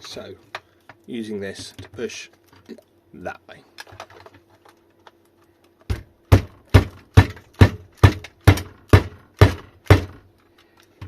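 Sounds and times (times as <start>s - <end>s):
tool striking hard knocks: 5.9s - 10.3s.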